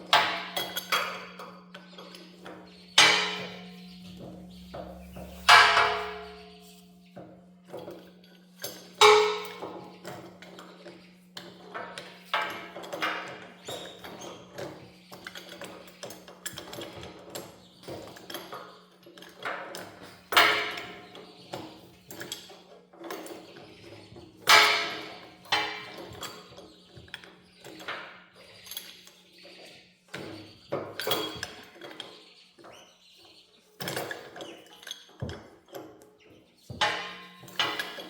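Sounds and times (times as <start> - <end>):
metal tools clanking: 0.2 - 6.6, 36.8 - 38.0.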